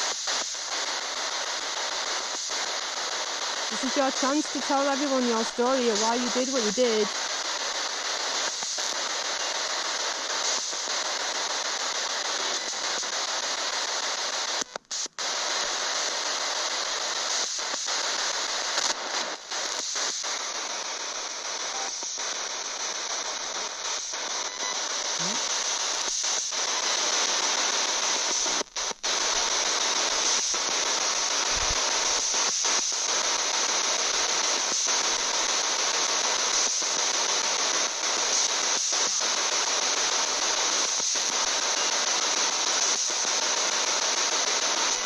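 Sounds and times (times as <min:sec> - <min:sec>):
radio static hiss: 0:00.0 - 0:45.0.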